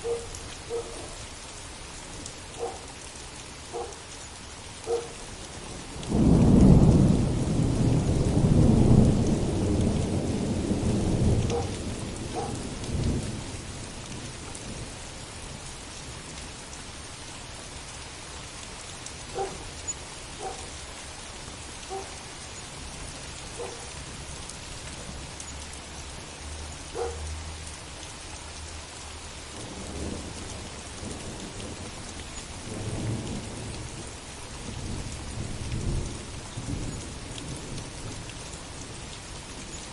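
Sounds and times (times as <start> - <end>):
faint dog barks: 0.0 - 1.2, 2.6 - 3.0, 3.7 - 4.0, 4.8 - 5.2, 11.5 - 12.6, 19.3 - 19.6, 20.4 - 20.7, 21.9 - 22.2, 23.5 - 23.9, 26.9 - 27.3
heavy rain falling: 0.0 - 39.9
thunder rumbling: 6.0 - 13.7.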